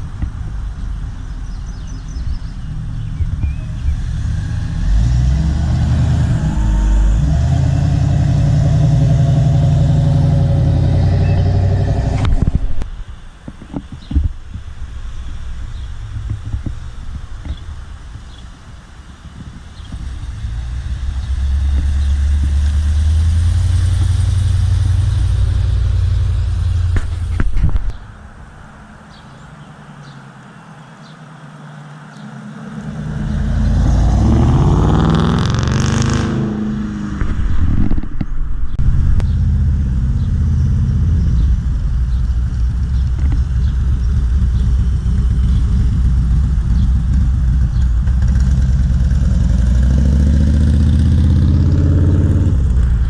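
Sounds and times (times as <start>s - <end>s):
car engine revving: 0.0s - 12.9s, 19.8s - 28.0s, 31.9s - 53.0s.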